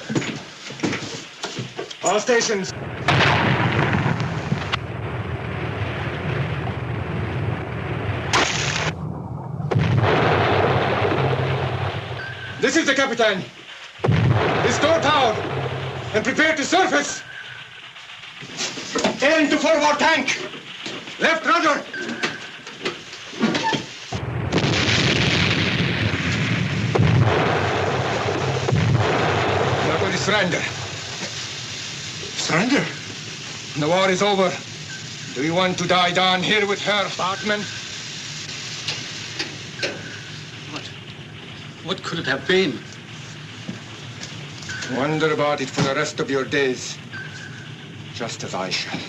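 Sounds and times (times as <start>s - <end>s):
sharp blast: 2.3s - 21.8s, 22.4s - 49.0s
depth charges rumbling: 2.3s - 22.0s, 24.1s - 49.0s
compressed air rushing roar: 13.7s - 20.8s.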